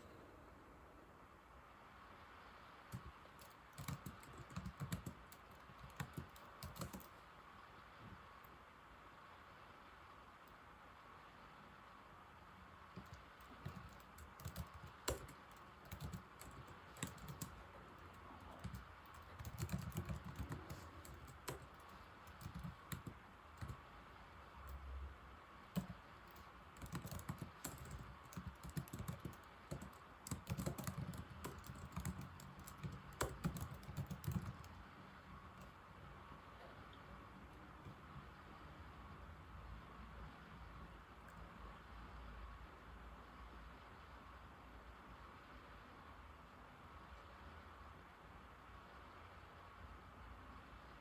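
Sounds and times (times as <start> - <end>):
laptop keyboard typing: 2.8 - 7.3, 12.9 - 23.9, 25.6 - 35.8.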